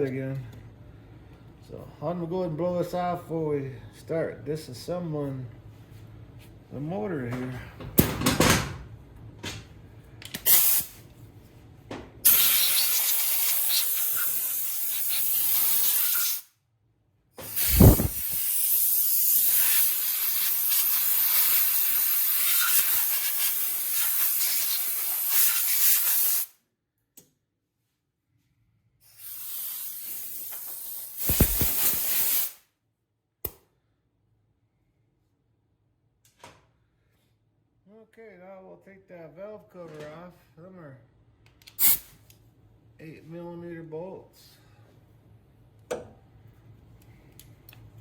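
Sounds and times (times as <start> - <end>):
compressed air blow gun hissing: 12.3 - 16.4, 17.4 - 26.5, 29.1 - 32.6.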